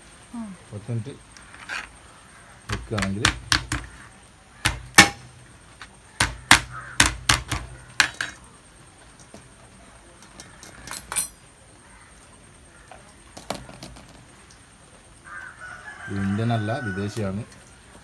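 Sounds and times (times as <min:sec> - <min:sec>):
utensils and dishes clinking: 0:07.0 - 0:08.4, 0:10.3 - 0:11.4.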